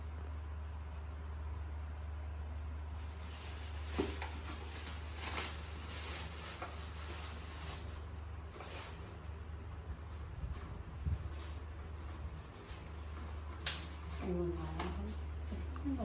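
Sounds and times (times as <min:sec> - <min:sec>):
steady low hum: 0:00.0 - 0:16.0
soft rustles and knocks: 0:03.0 - 0:09.3.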